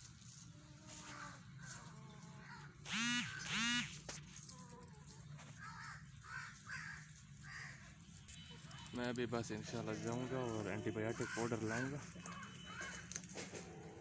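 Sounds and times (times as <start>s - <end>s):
chickens squawking: 5.5s - 8.0s.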